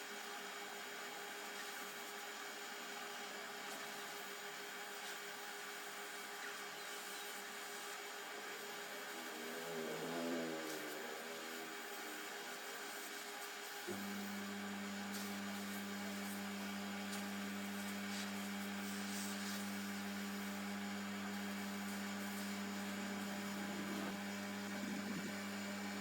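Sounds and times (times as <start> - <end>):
electrical mains hum: 0.0 - 26.0
constant hiss: 17.1 - 26.0.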